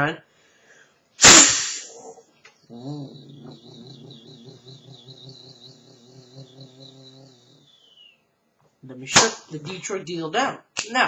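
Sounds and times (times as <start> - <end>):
vocal imitation of air brake hiss: 1.2 - 2.1, 2.7 - 8.1
vocal imitation of diesel engine idling: 2.7 - 7.9.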